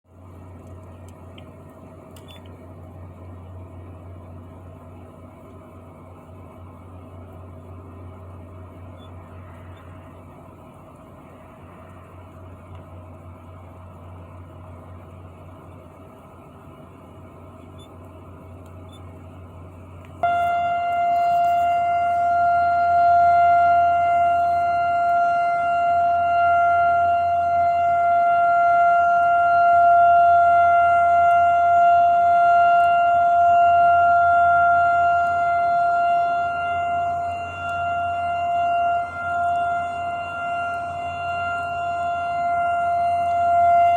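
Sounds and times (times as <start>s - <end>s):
air raid siren steady tone: 19.2s - 43.9s.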